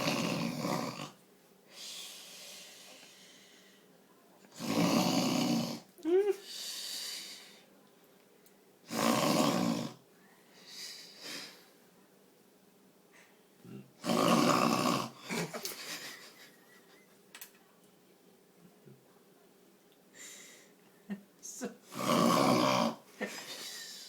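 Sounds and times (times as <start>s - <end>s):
person snoring: 0.0s - 1.2s, 4.5s - 5.9s, 8.9s - 10.0s, 13.7s - 15.5s, 21.8s - 24.0s
soft breaths: 1.6s - 4.2s, 6.3s - 7.8s, 10.1s - 12.0s, 20.1s - 21.1s.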